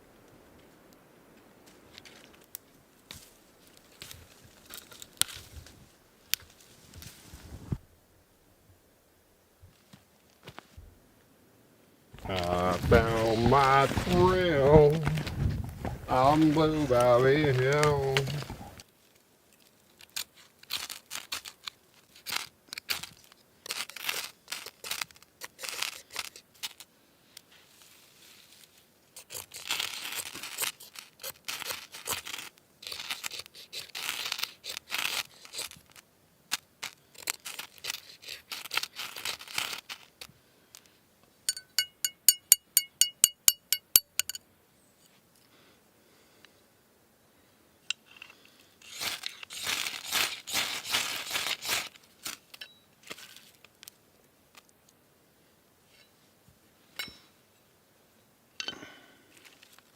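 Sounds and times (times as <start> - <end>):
packaging crinkling and rustling: 12.2 - 15.4, 16.2 - 26.8, 36.8 - 40.3, 48.8 - 54.7
sharp ringing ticks: 41.5 - 44.4.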